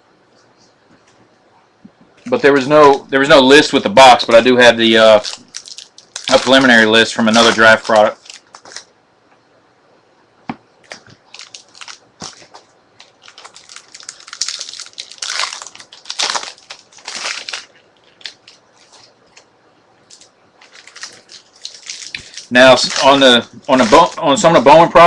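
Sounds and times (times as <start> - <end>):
wrappers crinkling and rustling: 4.9 - 8.9, 10.8 - 25.0.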